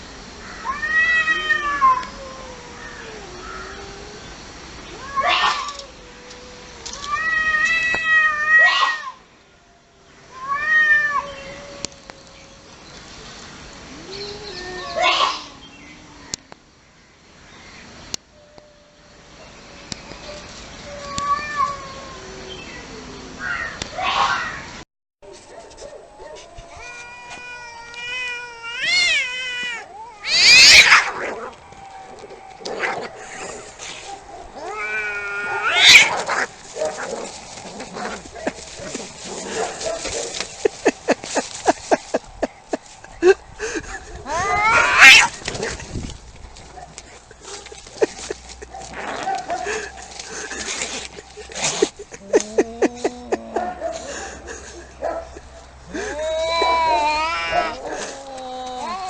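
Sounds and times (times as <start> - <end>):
cats yowling: 0.6 - 9.2, 10.3 - 12.8, 13.9 - 16.5, 19.7 - 24.6, 26.0 - 41.2, 44.2 - 45.8, 55.9 - 59.0.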